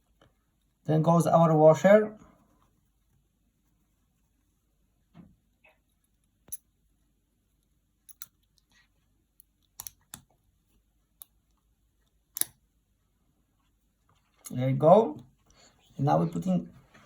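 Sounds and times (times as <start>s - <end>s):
small metal parts clicking: 8.1s - 8.7s.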